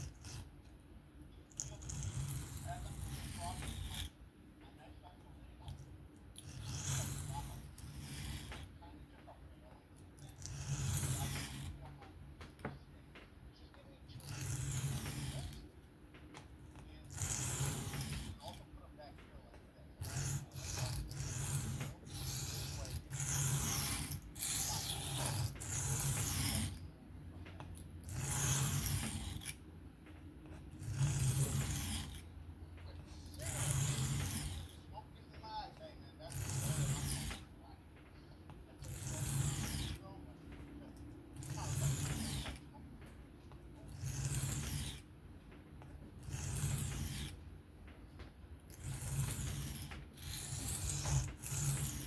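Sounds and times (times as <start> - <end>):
knife scraping sharpening plate: 6.4 - 8.7, 10.2 - 11.8, 14.2 - 15.6, 17.0 - 18.6, 20.0 - 26.9, 27.5 - 29.6, 30.5 - 32.3, 33.1 - 34.9, 36.2 - 37.5, 38.5 - 40.0, 41.4 - 42.7, 43.8 - 45.1, 46.2 - 47.4, 48.7 - 52.0.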